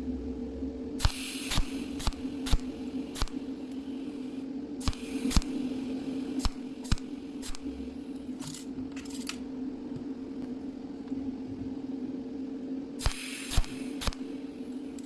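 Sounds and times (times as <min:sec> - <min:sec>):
welding machine humming: 0:01.0 - 0:09.4, 0:13.0 - 0:15.0.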